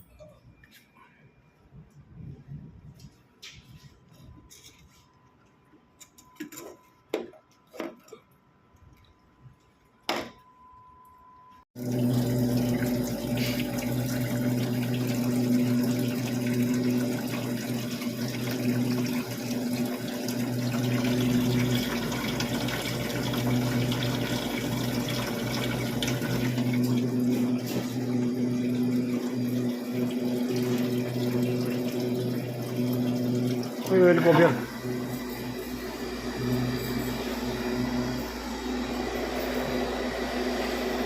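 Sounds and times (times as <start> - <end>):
ice maker humming: 11.8 - 41.0
water running: 11.8 - 41.0.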